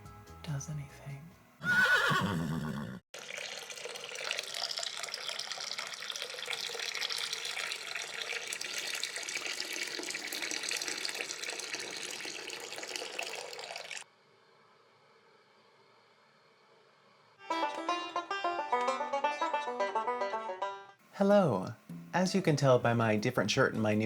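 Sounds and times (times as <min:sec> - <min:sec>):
music: 0:00.0 - 0:01.6, 0:17.4 - 0:24.0
horse whinny: 0:01.6 - 0:03.0
water splashing into a sink: 0:03.2 - 0:14.0.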